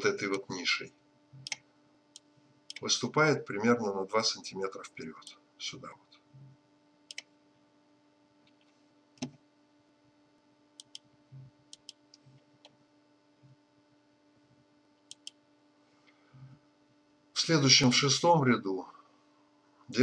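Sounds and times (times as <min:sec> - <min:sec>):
low steady hum: 0:00.0 - 0:20.0
sharp clicks: 0:10.8 - 0:11.0, 0:11.7 - 0:12.2, 0:15.0 - 0:15.4.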